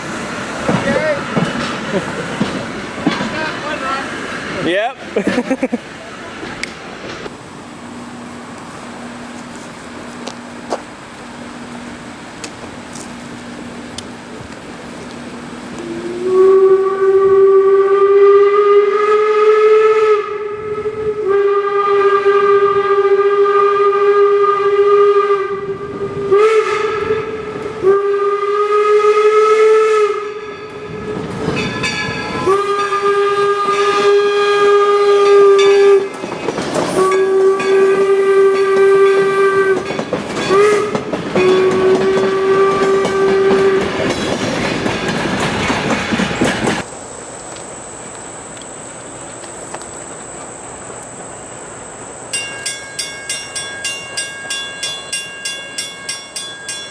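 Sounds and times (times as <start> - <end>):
train noise: 0.0 - 56.9
steam whistle blasts: 15.7 - 31.1, 32.4 - 36.2, 36.9 - 44.2.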